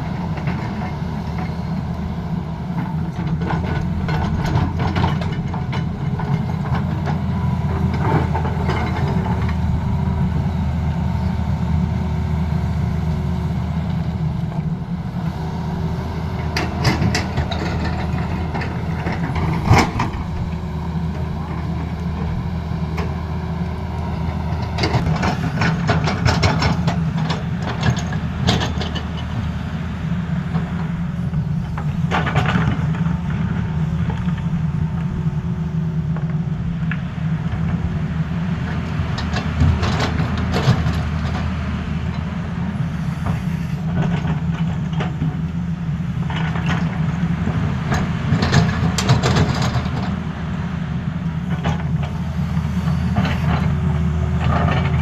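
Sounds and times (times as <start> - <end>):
excavator diesel engine running: 0.0 - 55.0
clanking and scraping: 2.8 - 10.5, 14.4 - 23.4, 24.3 - 29.5, 51.4 - 55.0.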